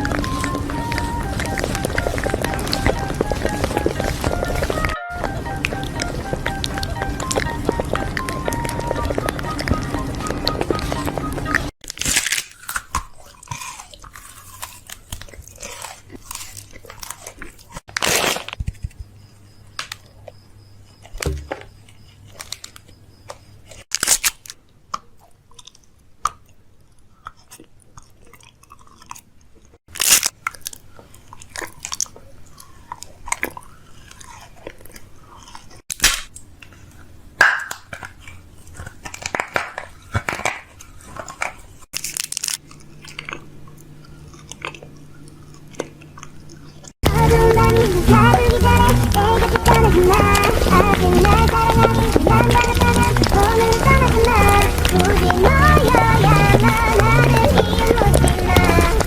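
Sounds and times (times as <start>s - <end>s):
crunchy chewing: 0.0s - 59.0s.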